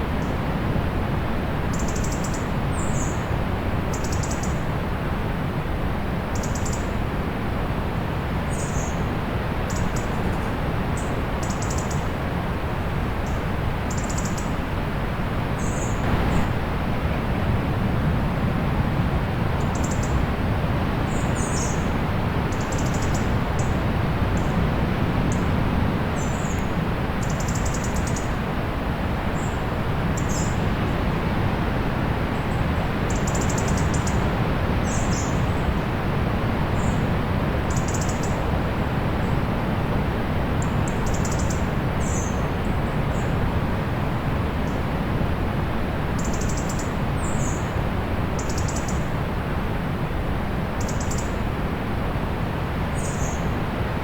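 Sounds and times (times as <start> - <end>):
distant sea surf: 4.7 - 54.0.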